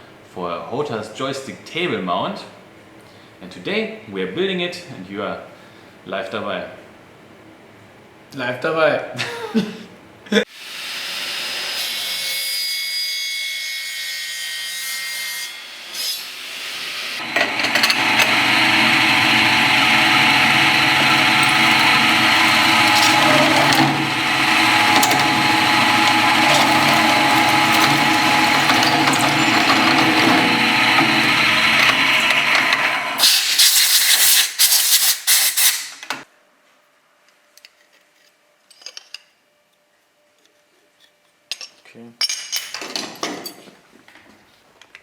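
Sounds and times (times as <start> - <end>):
power tool whining: 17.2 - 33.8.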